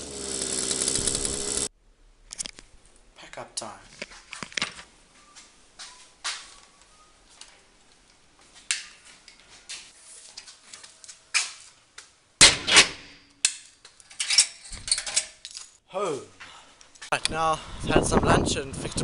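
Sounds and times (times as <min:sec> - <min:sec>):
tools and parts clicking: 0:13.3 - 0:15.8.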